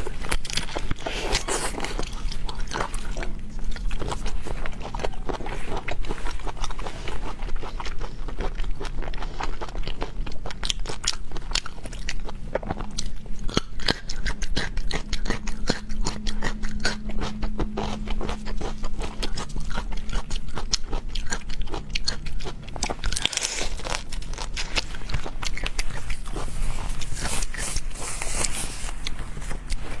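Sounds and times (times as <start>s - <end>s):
chewing crunchy seafood: 0.0s - 30.0s
low hum: 0.0s - 30.0s
rustling scrapes: 25.8s - 30.0s.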